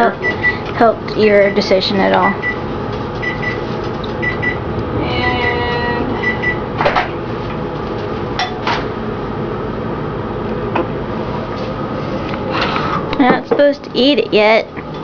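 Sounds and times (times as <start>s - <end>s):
steady mechanical hum: 0.0s - 15.0s
short high beeps: 6.2s - 6.6s.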